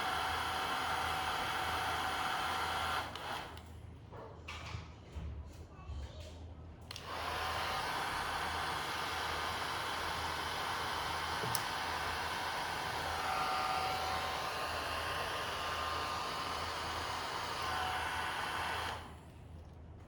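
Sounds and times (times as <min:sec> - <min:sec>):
bubble gun motor whirring: 0:00.0 - 0:03.6, 0:07.0 - 0:19.3.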